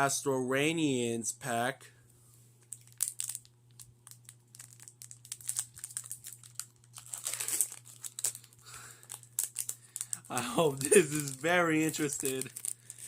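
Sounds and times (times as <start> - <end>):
foil wrapper crinkling: 2.6 - 13.0
wrapper tearing open: 2.7 - 13.0.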